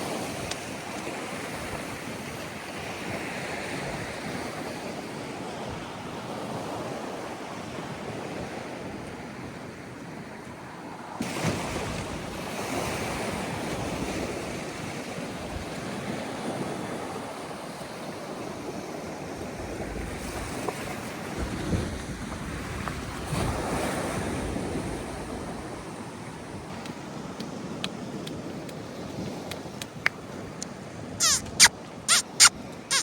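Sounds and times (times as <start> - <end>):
sea waves breaking: 11.2 - 33.0
wind buffeting microphone: 18.2 - 31.7.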